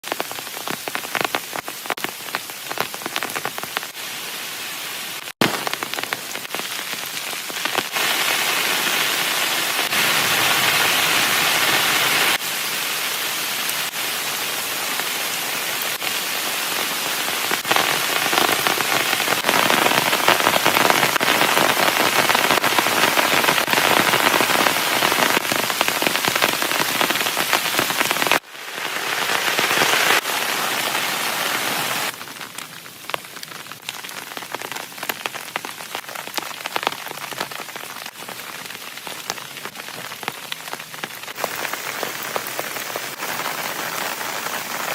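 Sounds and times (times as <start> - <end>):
heavy rain pouring: 0.0 - 44.9
raindrop strikes: 5.4 - 7.0.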